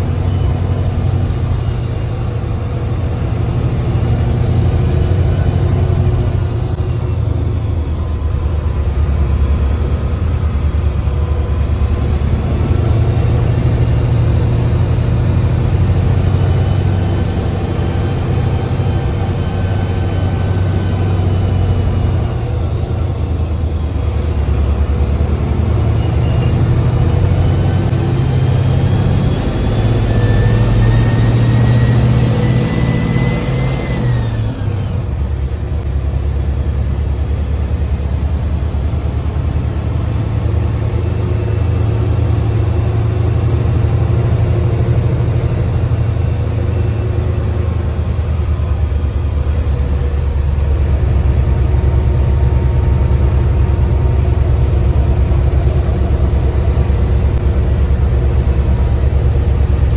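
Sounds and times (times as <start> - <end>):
turbocharger whistle: 0.0 - 36.1
diesel bus engine under load: 0.0 - 59.9.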